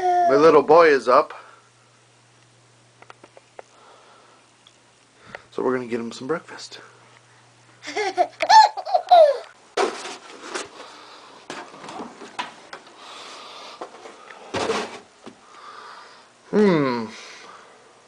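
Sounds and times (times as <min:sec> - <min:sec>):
toddler laughing and squealing: 0:07.9 - 0:09.5.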